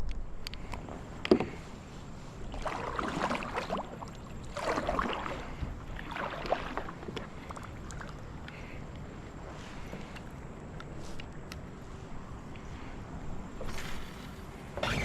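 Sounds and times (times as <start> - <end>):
kayak paddle splashing in water: 2.3 - 8.7.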